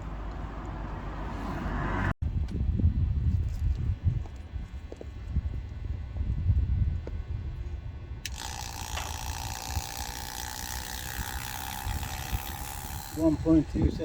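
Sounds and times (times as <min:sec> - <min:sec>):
pump whirring: 0:08.2 - 0:14.0.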